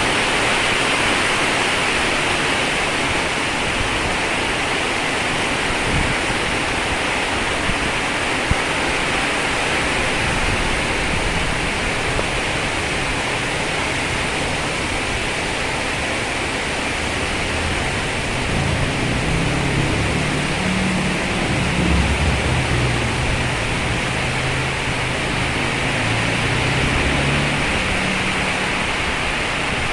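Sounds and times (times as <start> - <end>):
heavy rain hissing: 0.0 - 29.9
low rumble: 16.6 - 29.9.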